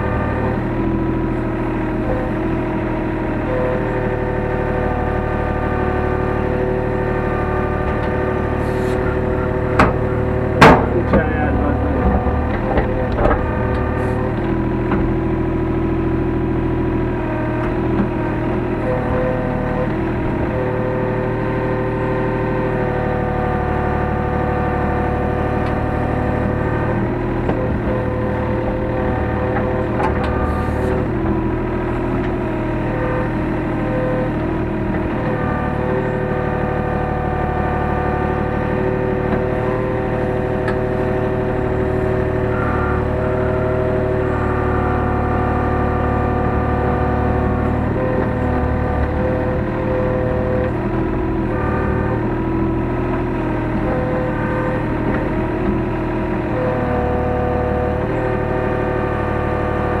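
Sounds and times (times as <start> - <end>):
excavator diesel engine running: 0.0 - 60.0
higher whining tones: 4.8 - 21.4, 24.9 - 54.9.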